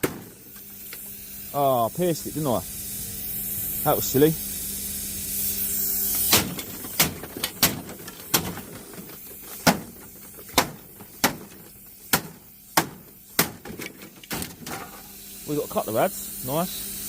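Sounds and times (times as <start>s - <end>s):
sharp knocks: 0.0s - 0.4s, 6.3s - 14.9s
gas hissing: 0.0s - 17.0s.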